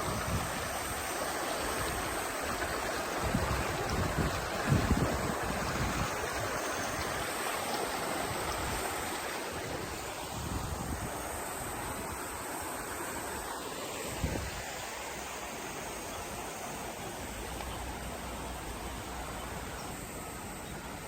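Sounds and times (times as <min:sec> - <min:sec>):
wind rumbling on microphone: 0:00.0 - 0:13.0, 0:14.1 - 0:14.8
stream flowing over stones: 0:00.0 - 0:21.0.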